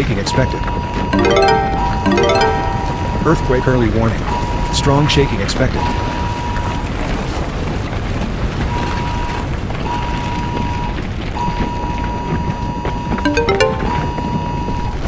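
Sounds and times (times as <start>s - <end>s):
alert tone: 1.2s - 3.3s, 13.3s - 14.2s.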